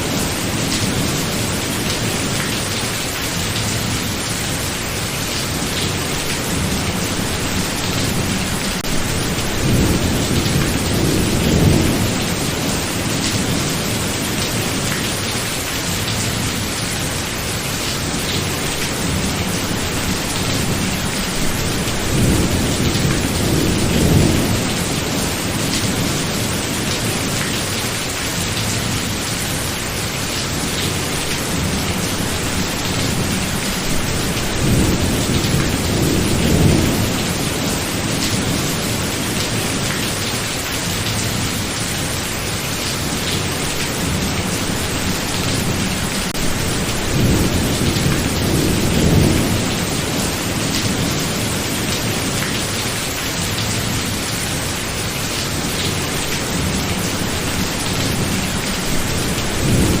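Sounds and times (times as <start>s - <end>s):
heavy rain: 0.0s - 60.0s
thunder rumbling: 6.1s - 14.8s, 43.9s - 52.3s, 55.6s - 60.0s.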